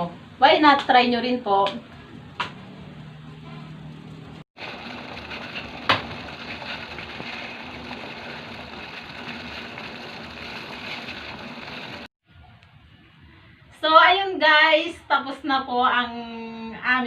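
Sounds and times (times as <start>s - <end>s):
pot of water boiling: 4.6s - 12.1s.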